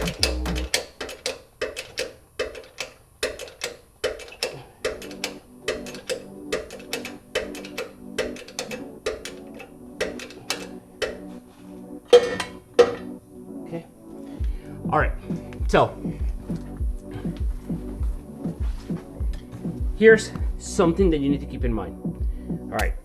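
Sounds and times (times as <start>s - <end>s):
music with clicking beat: 0.0s - 11.4s, 14.4s - 23.0s.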